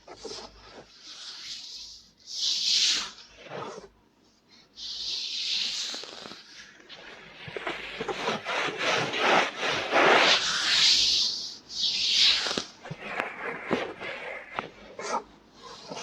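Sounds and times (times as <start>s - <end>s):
scratching and rubbing at microphone: 0.0s - 1.8s, 2.7s - 3.9s, 4.9s - 16.0s
hissy brushing: 4.8s - 16.0s.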